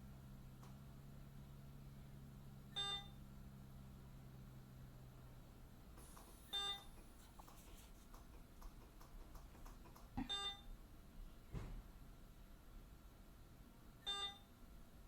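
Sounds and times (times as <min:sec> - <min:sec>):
short electronic beep: 0:06.5 - 0:06.9, 0:14.1 - 0:14.4.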